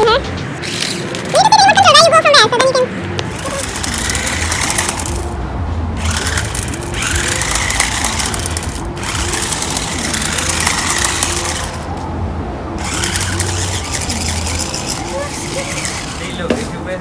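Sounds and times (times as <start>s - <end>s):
toy car electric motors whirring: 0.6s - 1.7s, 3.3s - 5.3s, 6.0s - 12.1s, 12.8s - 17.0s.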